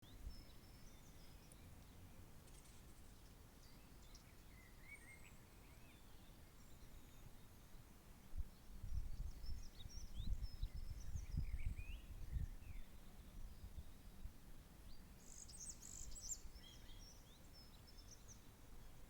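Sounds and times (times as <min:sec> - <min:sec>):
small birds chirping: 0:00.0 - 0:07.7, 0:08.6 - 0:19.0
wind rumble on microphone: 0:08.2 - 0:15.0.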